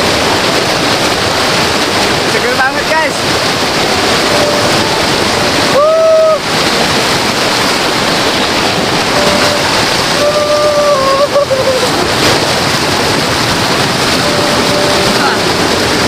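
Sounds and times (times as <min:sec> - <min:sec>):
river water rushing: 0:00.0 - 0:16.0
faint held tone: 0:04.2 - 0:05.0, 0:09.1 - 0:11.4, 0:14.2 - 0:15.4.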